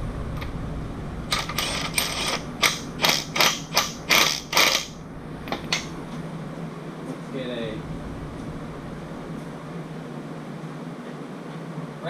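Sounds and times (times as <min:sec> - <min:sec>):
ratchet wrench clicking: 0:01.3 - 0:05.9.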